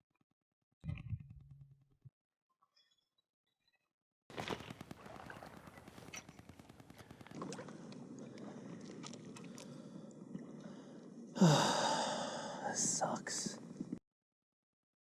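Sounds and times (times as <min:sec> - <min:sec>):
fishing gear clicks and knocks: 0:04.3 - 0:09.7.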